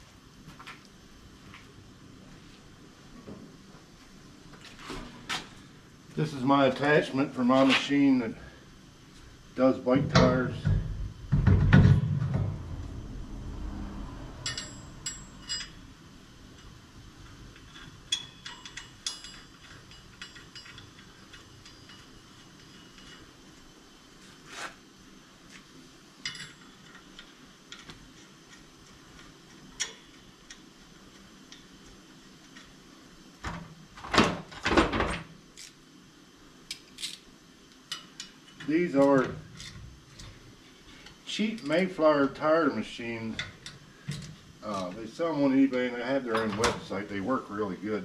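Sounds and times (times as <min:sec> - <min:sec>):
heavy thump with low rumble: 0:10.1 - 0:13.0.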